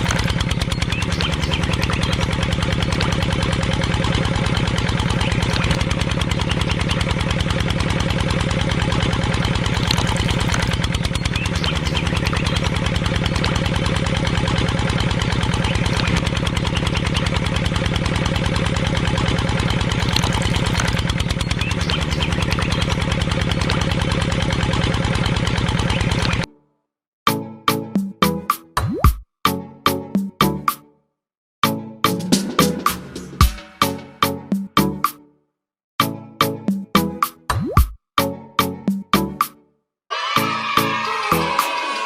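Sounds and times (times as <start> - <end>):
small engine chugging: 0.0 - 26.5.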